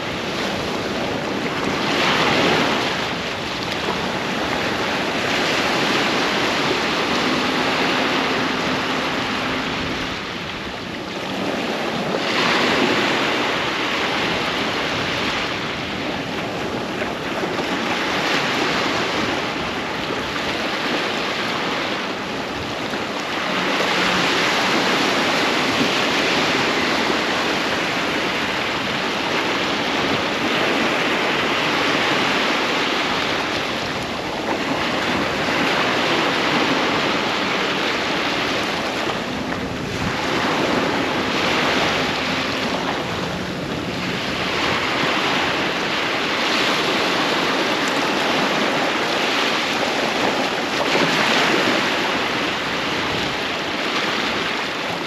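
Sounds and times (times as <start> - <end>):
ocean surf breaking: 0.0 - 55.0.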